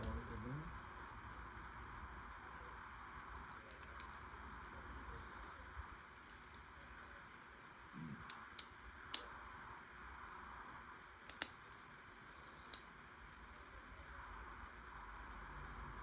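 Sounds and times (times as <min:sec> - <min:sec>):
faint steady hiss: 0:00.0 - 0:16.0
plastic parts clicking together: 0:03.2 - 0:04.2, 0:11.3 - 0:12.9.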